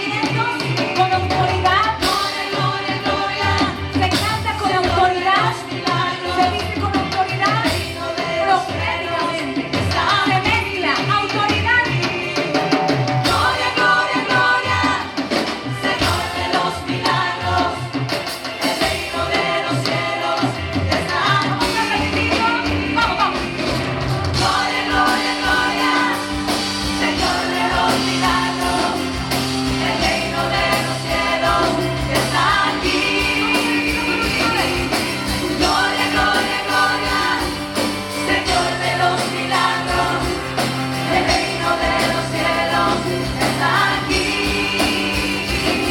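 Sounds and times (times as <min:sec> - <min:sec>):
band accompaniment with bass: 0:00.0 - 0:45.9
person singing: 0:27.0 - 0:37.6.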